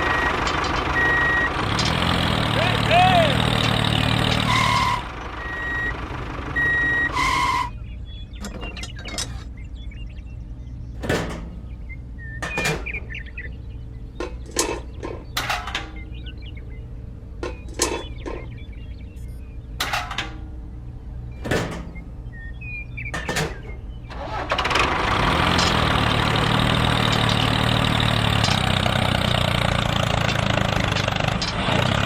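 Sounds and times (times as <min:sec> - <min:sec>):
low hum: 0:03.4 - 0:24.7
electronic beeps: 0:04.5 - 0:11.0, 0:21.2 - 0:24.1
sharp clicks and knocks: 0:08.4 - 0:09.5.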